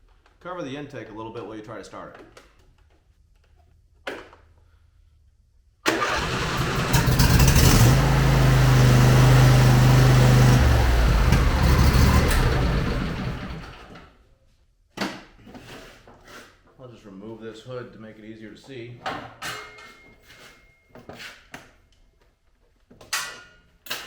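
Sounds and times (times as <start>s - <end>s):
mower engine cranking and running: 5.9s - 14.1s.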